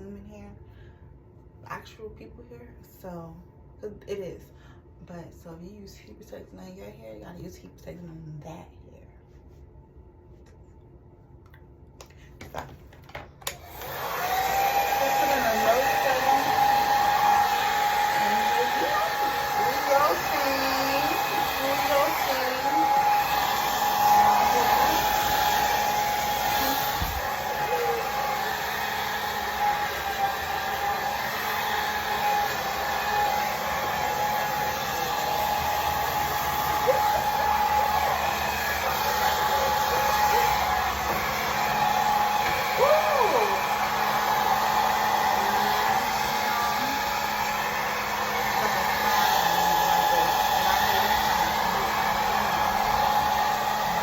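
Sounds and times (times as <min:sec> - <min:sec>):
blow dryer running: 0:12.3 - 0:54.0.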